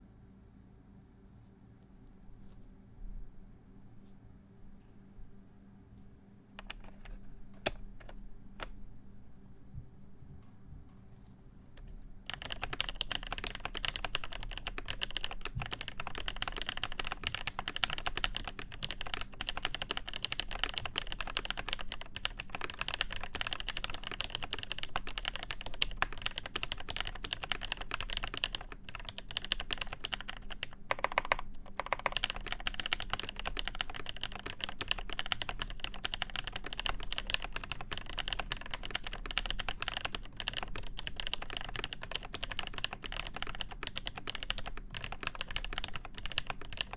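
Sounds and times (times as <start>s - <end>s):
mechanical keyboard typing: 6.6s - 8.8s, 11.8s - 46.9s.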